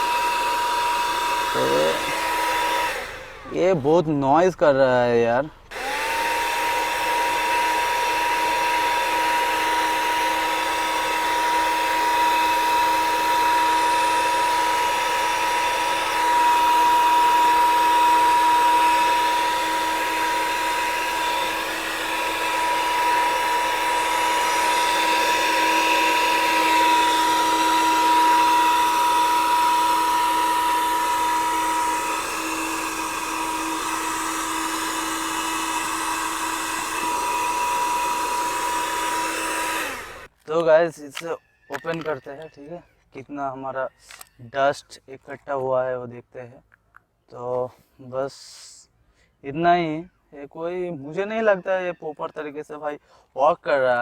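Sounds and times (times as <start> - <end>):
handheld vacuum cleaner whine: 0.0 - 4.0, 5.6 - 40.4, 41.7 - 42.6.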